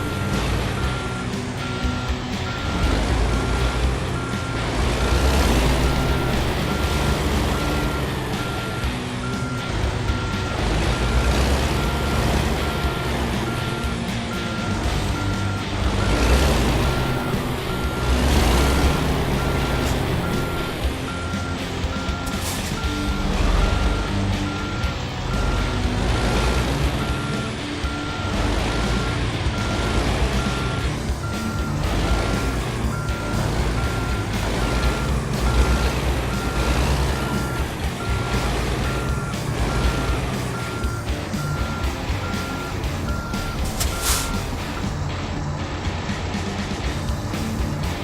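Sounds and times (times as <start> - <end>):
backup alarm beeping: 0.0 - 45.6
heavy diesel engine running: 0.0 - 48.0.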